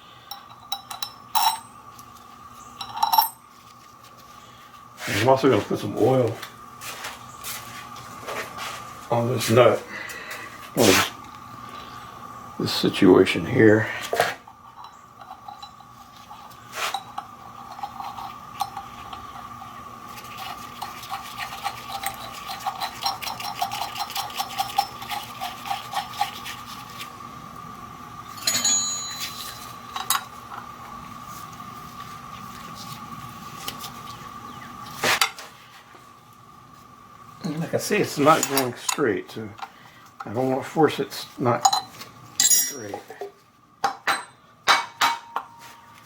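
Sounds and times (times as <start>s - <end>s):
metal hand tools clinking: 0.3s - 1.7s, 28.4s - 30.2s, 41.6s - 43.1s
sharp metal clanks: 28.4s - 30.2s, 41.7s - 43.0s.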